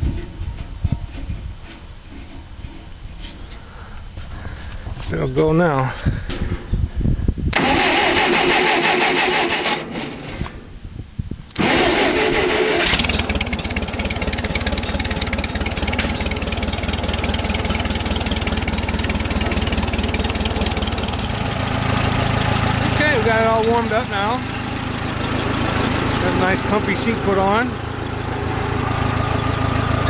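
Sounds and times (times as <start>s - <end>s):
tractor engine cranking and starting: 7.4s - 10.9s, 11.5s - 30.0s.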